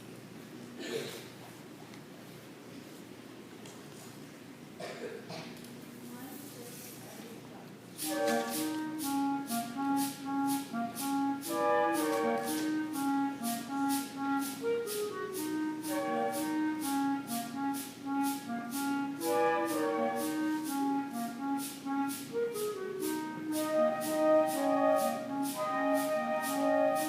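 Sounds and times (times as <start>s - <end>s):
concert band playing: 8.0s - 27.0s
shaken percussion beat: 8.0s - 27.0s.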